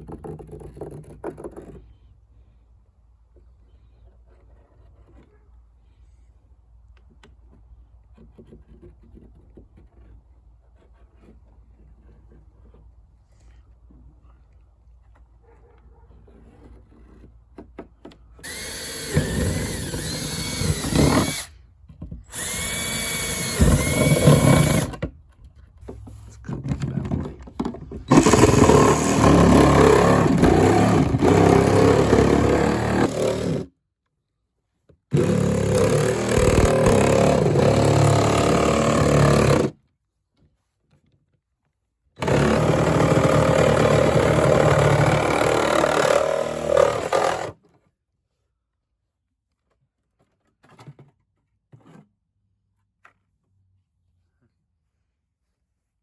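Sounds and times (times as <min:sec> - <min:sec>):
jigsaw running: 0:18.4 - 0:21.5, 0:22.3 - 0:25.0, 0:28.1 - 0:33.7, 0:35.1 - 0:39.8, 0:42.2 - 0:47.6
drill whirring: 0:18.4 - 0:21.6, 0:22.2 - 0:25.0, 0:28.1 - 0:33.7, 0:35.1 - 0:39.7, 0:42.2 - 0:47.6.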